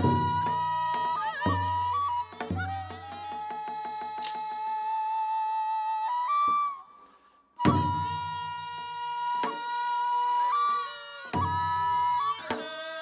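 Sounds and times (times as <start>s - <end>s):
wind instrument long held notes: 0.0s - 13.0s.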